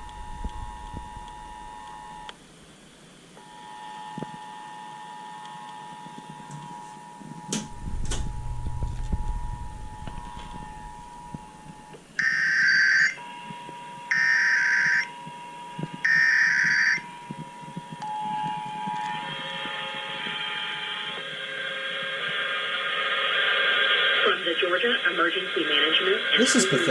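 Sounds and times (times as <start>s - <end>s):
low rumble: 0.0s - 2.3s, 7.6s - 12.1s
sharp clicks: 7.5s - 12.0s
screeching data tone bursts: 16.0s - 17.2s.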